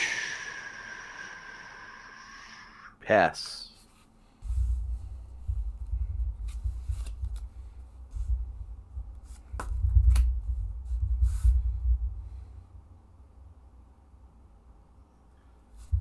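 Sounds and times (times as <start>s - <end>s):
low rumble: 4.4s - 13.8s.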